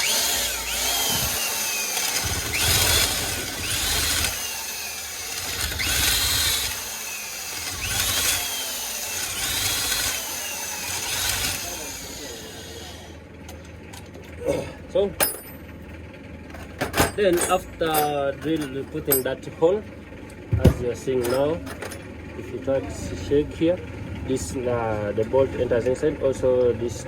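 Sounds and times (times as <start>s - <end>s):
electric drill whining under load: 0.0s - 13.2s.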